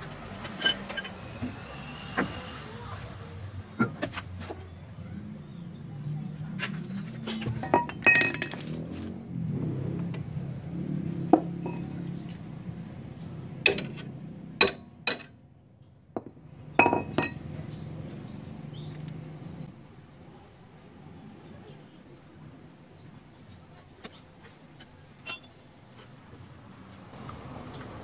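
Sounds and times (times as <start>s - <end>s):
metal tools clinking: 6.6s - 8.9s, 11.4s - 12.2s, 13.7s - 15.3s, 16.8s - 17.5s, 24.8s - 25.7s.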